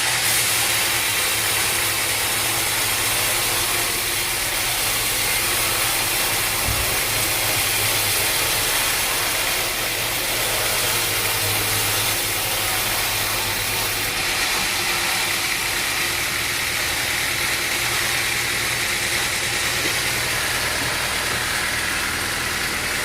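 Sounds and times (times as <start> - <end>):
loud even hiss: 0.0 - 14.3
low engine hum: 2.7 - 23.0.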